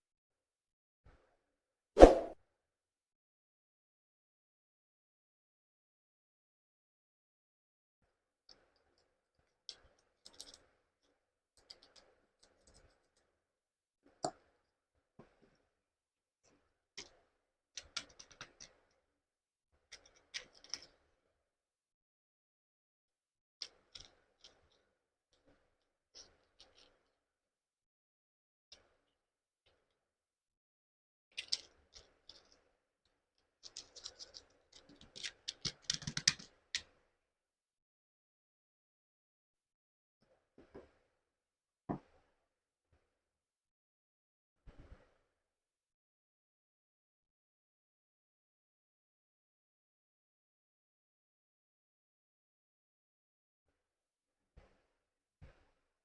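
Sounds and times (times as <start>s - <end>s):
small clicks and scratches: 8.4s - 13.4s, 16.4s - 19.1s, 19.8s - 21.3s, 23.6s - 27.2s, 31.3s - 37.1s
small parts and tools handled: 33.6s - 36.4s.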